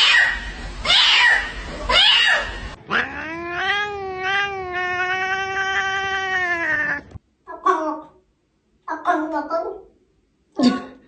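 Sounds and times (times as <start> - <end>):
cat yowling: 0.0 - 7.2.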